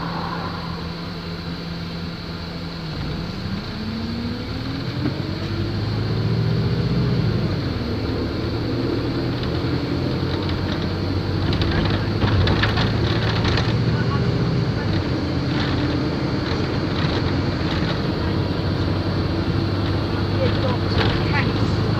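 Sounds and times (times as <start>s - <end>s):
bus engine accelerating: 0.0s - 21.9s
rattling and clicking: 10.2s - 13.9s.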